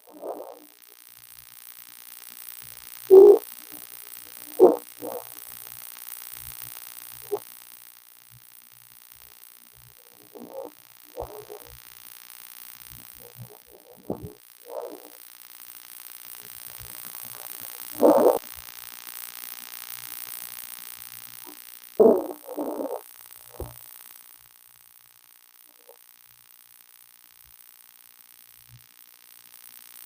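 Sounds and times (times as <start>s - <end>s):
woman snoring: 3.1s - 3.8s, 4.4s - 5.4s, 10.1s - 11.7s, 13.2s - 15.2s, 17.9s - 18.4s, 22.0s - 23.7s.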